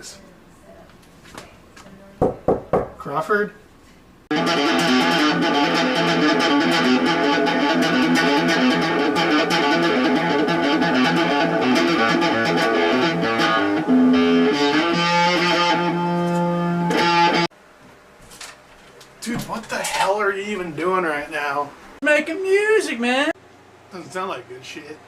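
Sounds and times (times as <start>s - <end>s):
loud guitar music: 4.3s - 17.5s.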